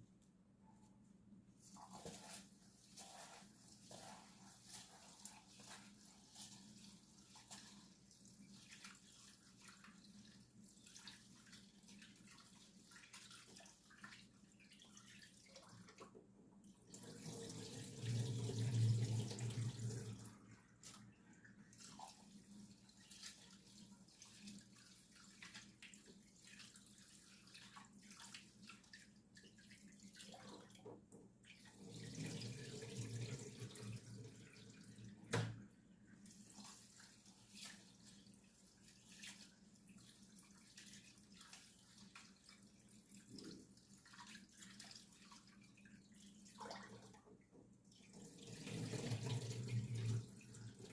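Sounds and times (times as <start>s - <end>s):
tap water running into sink: 15.0s - 21.0s, 30.1s - 35.7s, 46.7s - 50.9s.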